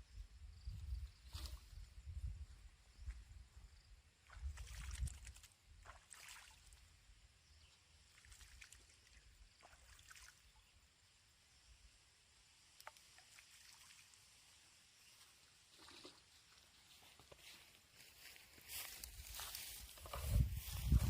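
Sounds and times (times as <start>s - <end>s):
faint low rumble on microphone: 19.1s - 21.0s.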